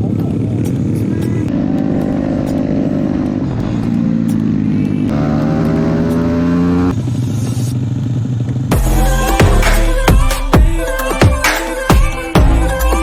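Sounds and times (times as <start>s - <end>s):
small motorcycle engine running: 0.0s - 8.8s.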